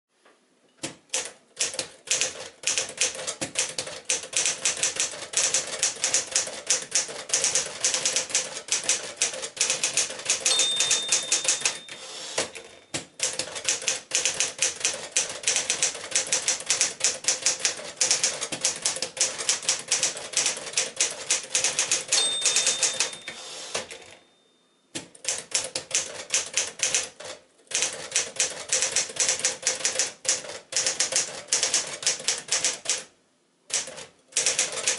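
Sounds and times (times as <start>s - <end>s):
manual typewriter typing: 1.0s - 24.2s, 25.0s - 33.1s, 33.7s - 34.9s
typewriter margin bell ring: 10.2s - 12.9s, 21.8s - 24.6s.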